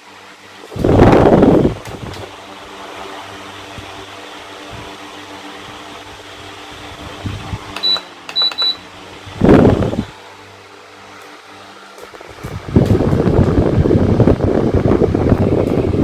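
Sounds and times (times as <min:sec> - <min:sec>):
electric fan humming and whirring: 0:00.0 - 0:16.0
air buffeting microphone: 0:00.7 - 0:02.4, 0:06.8 - 0:07.8, 0:09.2 - 0:10.1, 0:12.2 - 0:16.0.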